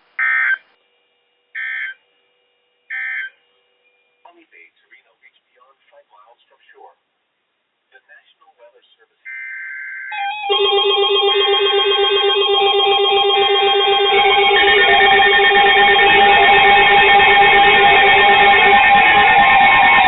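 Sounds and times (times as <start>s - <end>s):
weather alert radio alarms beeping: 2.9s - 3.6s, 9.3s - 20.0s
buzzy two-tone data bursts: 10.1s - 20.0s.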